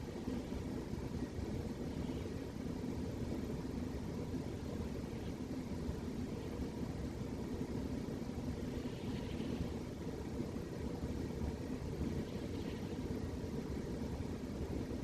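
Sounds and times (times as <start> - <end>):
cat snoring: 8.7 - 9.8.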